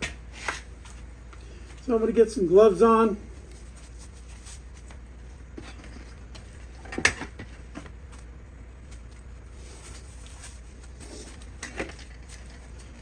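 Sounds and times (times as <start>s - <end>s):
handling noises: 3.4s - 13.0s.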